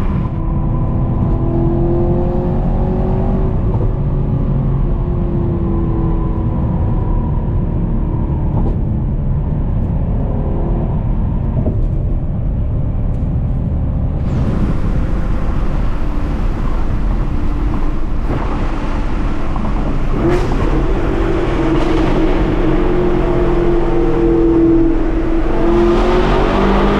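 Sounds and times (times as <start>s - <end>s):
road and wind noise hiss: 0.0s - 26.9s
car engine running: 11.2s - 26.9s.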